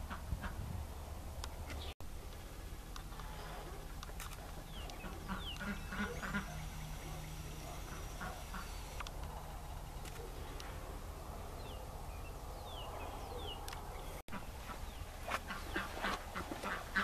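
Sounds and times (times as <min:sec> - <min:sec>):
bird chirps: 0:04.6 - 0:09.0, 0:11.5 - 0:14.2.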